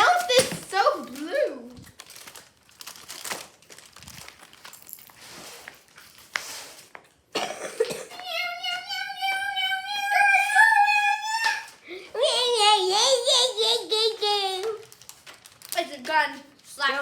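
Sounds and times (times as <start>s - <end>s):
objects clicking and rustling: 0.0s - 7.2s, 14.6s - 16.3s
child singing long high note: 8.2s - 14.6s.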